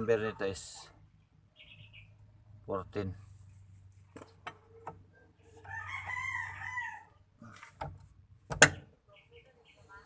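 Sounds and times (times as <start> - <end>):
rooster crowing: 5.6 - 7.2.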